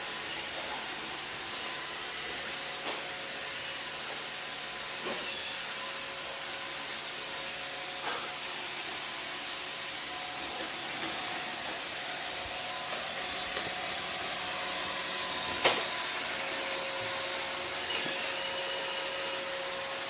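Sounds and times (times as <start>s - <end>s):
robot vacuum whirring: 8.0s - 20.0s.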